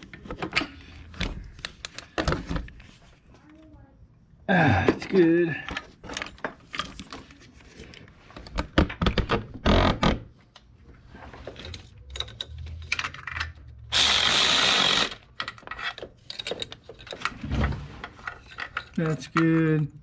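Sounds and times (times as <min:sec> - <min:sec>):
ratchet wrench clicking: 0:13.9 - 0:15.2.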